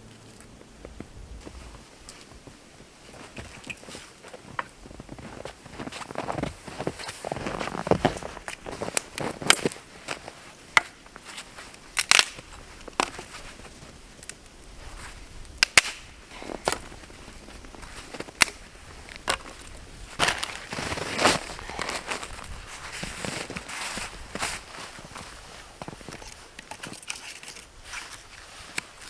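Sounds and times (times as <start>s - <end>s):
dry wood snapping: 8.4s - 9.8s, 11.7s - 13.3s, 15.5s - 17.0s, 18.1s - 23.2s, 25.9s - 28.9s.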